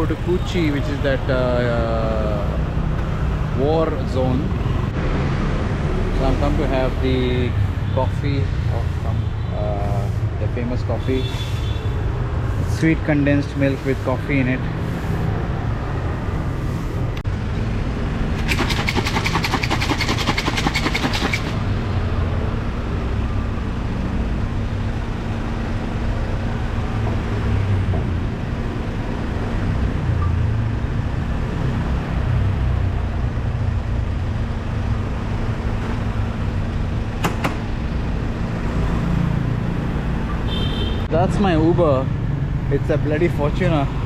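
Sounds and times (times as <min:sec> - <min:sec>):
street traffic rumble: 0:00.0 - 0:44.0
fast clattering: 0:18.4 - 0:21.6
sharp clicks: 0:18.4 - 0:21.6.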